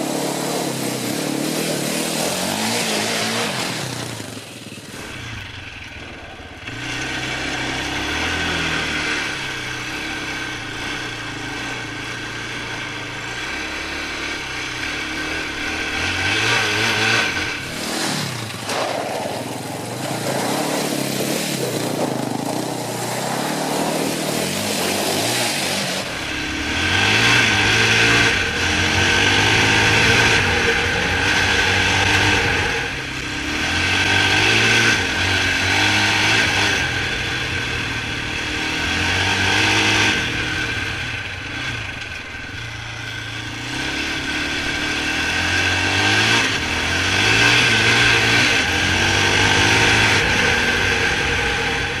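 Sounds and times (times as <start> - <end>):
quad engine revving: 0.0 - 52.0.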